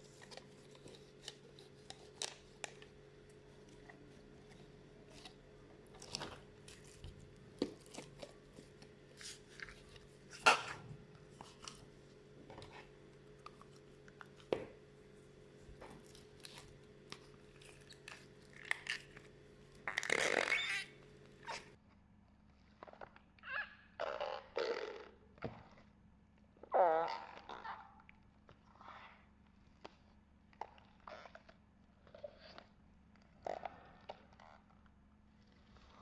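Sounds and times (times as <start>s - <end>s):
slime squishing: 0.0s - 21.8s.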